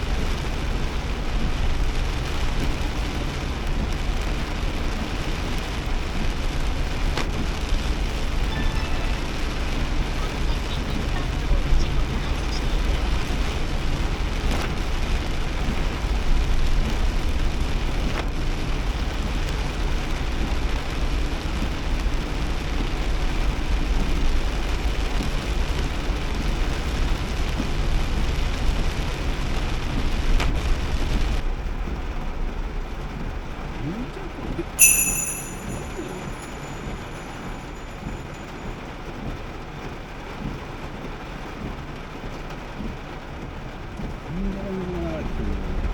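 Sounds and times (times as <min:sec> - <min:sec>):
heavy rain on car body: 0:00.0 - 0:34.8, 0:36.6 - 0:45.9
low road rumble: 0:00.0 - 0:34.8, 0:35.8 - 0:45.9
short high beep: 0:08.5 - 0:09.4, 0:34.8 - 0:37.9.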